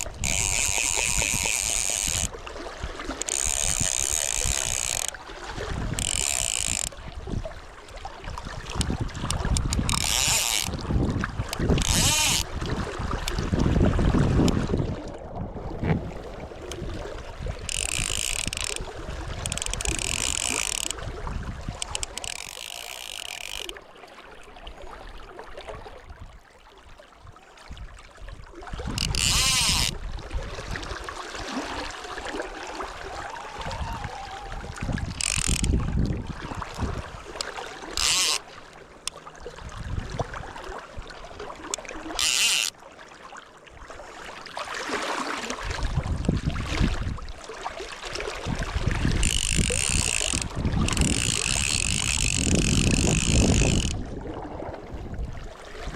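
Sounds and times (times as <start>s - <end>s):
fishing reel ratchet buzzing: 0.0s - 2.4s, 3.1s - 5.2s, 5.8s - 7.0s, 8.6s - 10.8s, 11.5s - 12.5s, 17.6s - 21.1s, 21.8s - 23.8s, 28.9s - 30.0s, 35.0s - 35.8s, 37.4s - 38.4s, 42.1s - 42.8s, 49.0s - 54.0s
wind buffeting microphone: 3.6s - 22.1s, 33.0s - 37.3s, 39.6s - 40.5s, 45.6s - 47.4s, 48.4s - 55.9s.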